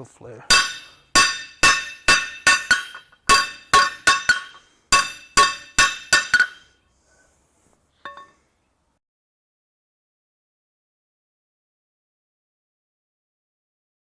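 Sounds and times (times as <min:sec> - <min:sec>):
hammer striking hot steel on anvil: 0:00.5 - 0:06.6, 0:08.1 - 0:08.3.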